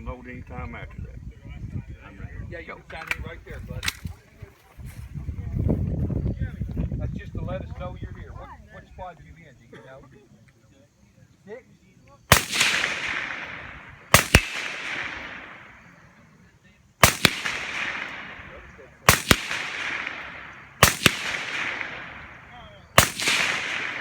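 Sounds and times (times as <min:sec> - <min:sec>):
rifle shots with rolling echo: 0:12.3 - 0:24.0.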